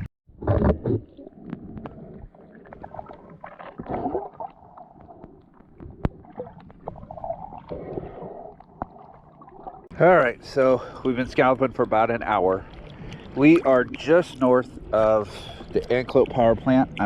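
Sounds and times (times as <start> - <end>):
water sloshing and gurgling: 0.0 - 17.0
water splashes: 0.3 - 17.0.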